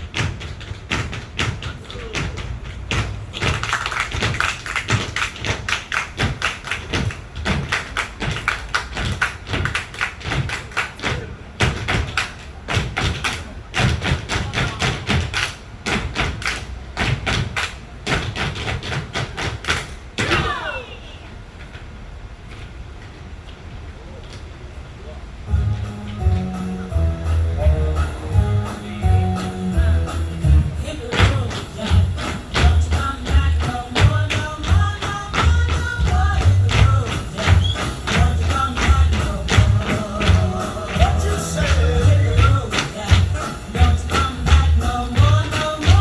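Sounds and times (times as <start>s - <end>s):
tap shoes on stage floor: 0.0s - 20.4s, 30.1s - 46.0s.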